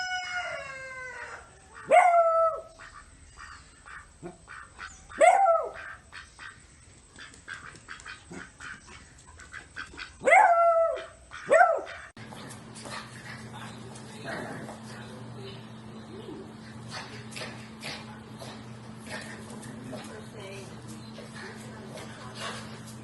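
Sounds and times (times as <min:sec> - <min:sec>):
dog barking: 0:01.8 - 0:02.7, 0:05.1 - 0:06.0, 0:10.2 - 0:12.1.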